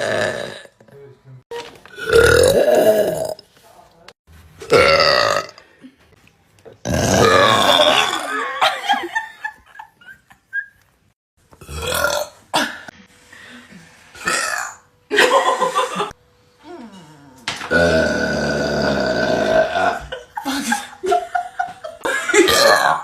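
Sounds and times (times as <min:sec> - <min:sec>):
loud human burps: 0:00.0 - 0:00.9, 0:01.9 - 0:03.4, 0:04.7 - 0:05.7, 0:06.8 - 0:08.5, 0:11.6 - 0:12.9, 0:14.2 - 0:14.9, 0:17.7 - 0:20.1, 0:22.3 - 0:23.0.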